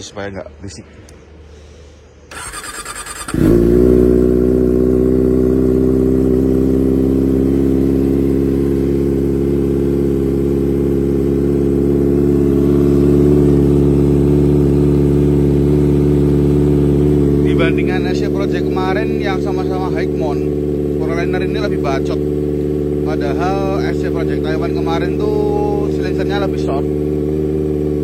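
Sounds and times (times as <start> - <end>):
starter cranking: 2.3 - 3.5
motorcycle engine idling: 2.3 - 28.0.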